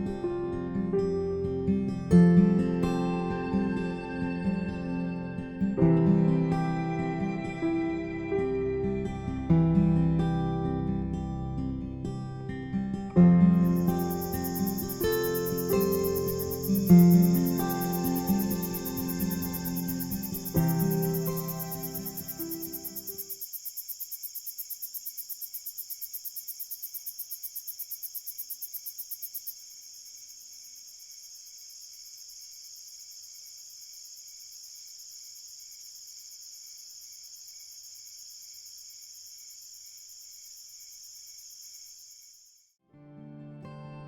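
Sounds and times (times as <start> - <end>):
insects trilling: 13.4 - 42.7
pulsing insect chirp: 13.4 - 42.8.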